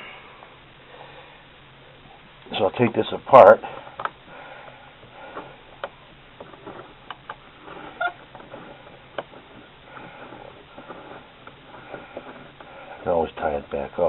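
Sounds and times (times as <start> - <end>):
sticks clicking and rustling: 5.1 - 13.1.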